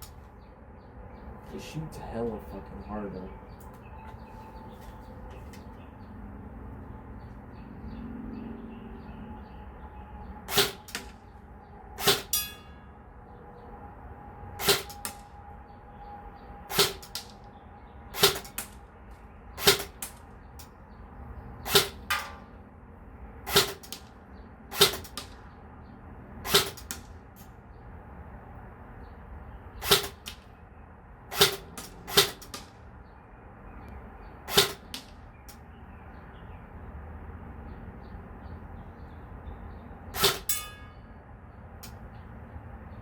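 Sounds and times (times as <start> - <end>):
airsoft gun shots: 10.5 - 11.2, 12.0 - 12.4, 14.6 - 15.2, 16.7 - 17.3, 18.2 - 18.8, 19.6 - 20.2, 21.7 - 22.4, 23.5 - 24.1, 24.7 - 25.4, 26.5 - 27.0, 29.8 - 30.4, 31.3 - 32.7, 34.5 - 35.2, 40.2 - 40.7
short ringing: 12.3 - 12.9, 40.3 - 41.1.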